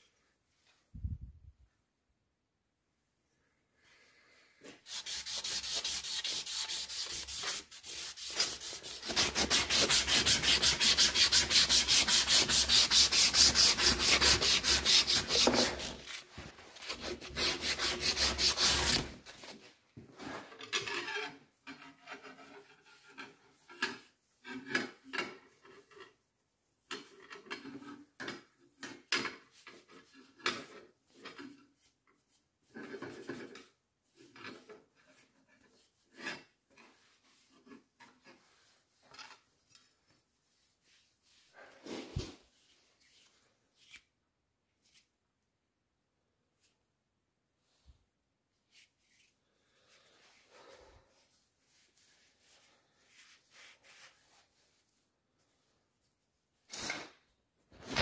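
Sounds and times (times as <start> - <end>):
abrasive filing strokes: 4.6 - 19.2.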